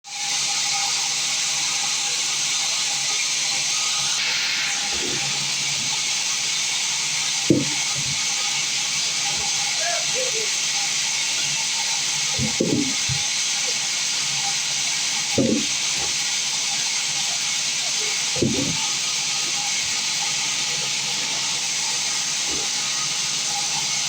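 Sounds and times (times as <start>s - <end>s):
sawmill machinery hissing: 0.1s - 24.0s
faint voice: 9.7s - 10.6s.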